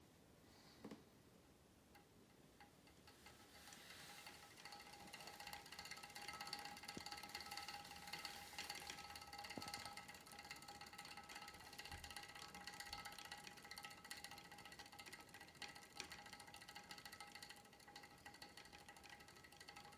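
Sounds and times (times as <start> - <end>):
exercise bike metallic rattle: 2.5 - 19.9.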